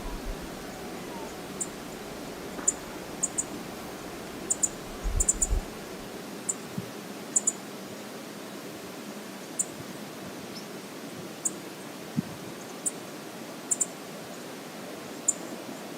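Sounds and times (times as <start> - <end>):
waterfall rushing: 0.0 - 6.1.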